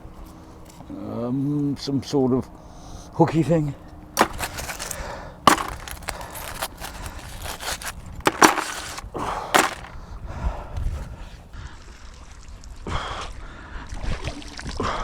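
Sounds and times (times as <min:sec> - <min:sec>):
scrap metal knocking and clattering: 0:04.2 - 0:09.0, 0:09.6 - 0:09.9.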